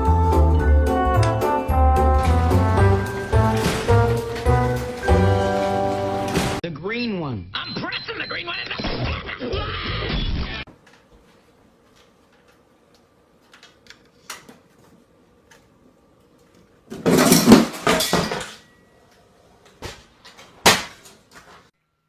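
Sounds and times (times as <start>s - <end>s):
ceiling fan humming: 0.9s - 6.6s
clattering crash: 2.1s - 6.6s, 17.0s - 18.8s.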